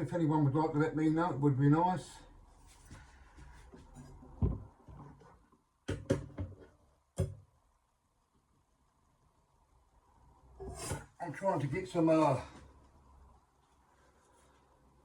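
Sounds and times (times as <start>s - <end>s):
knocks on a workbench: 4.4s - 4.7s, 5.9s - 7.4s.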